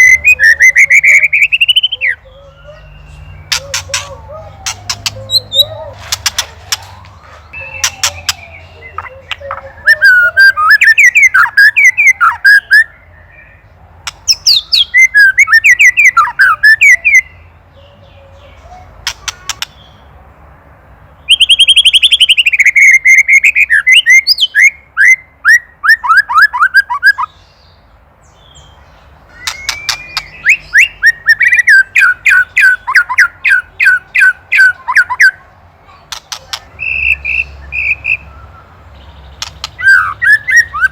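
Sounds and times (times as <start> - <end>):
bird singing whistled phrases: 0.0 - 6.0, 7.6 - 13.6, 14.3 - 17.4, 21.3 - 27.4, 29.3 - 35.4, 36.8 - 38.8, 39.6 - 40.9.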